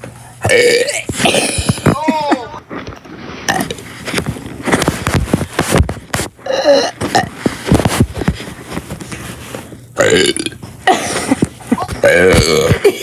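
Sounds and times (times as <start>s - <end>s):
person burping: 0.4s - 2.5s, 6.4s - 7.3s, 10.0s - 11.2s, 11.8s - 13.0s.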